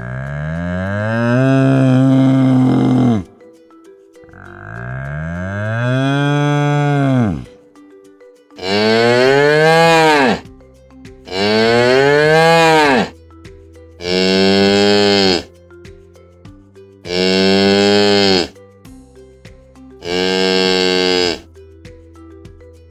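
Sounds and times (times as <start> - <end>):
cow mooing: 0.0 - 3.4, 5.1 - 7.5, 8.6 - 10.4, 11.3 - 13.1, 14.0 - 15.5, 17.1 - 18.5, 20.0 - 21.4
faint background music: 0.0 - 22.9.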